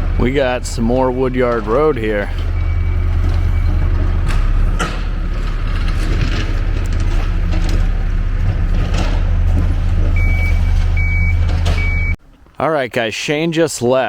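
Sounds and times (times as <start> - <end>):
diesel machine droning: 0.0 - 12.2
metal clanks and rattles: 0.1 - 12.6
reversing beeper: 2.4 - 4.0, 10.2 - 12.2.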